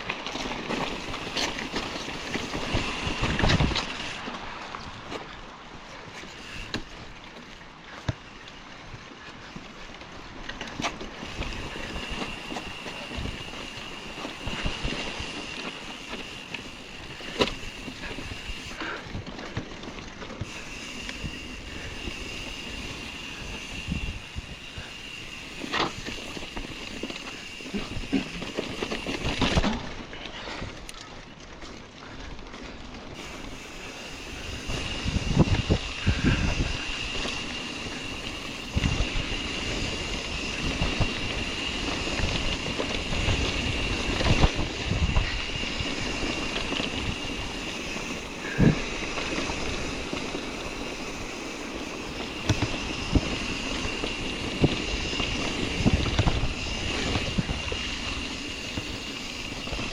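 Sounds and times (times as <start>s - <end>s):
bike rattling over dirt trail: 0.0s - 59.9s
wind on microphone: 1.0s - 4.3s, 21.2s - 29.7s, 33.2s - 59.9s.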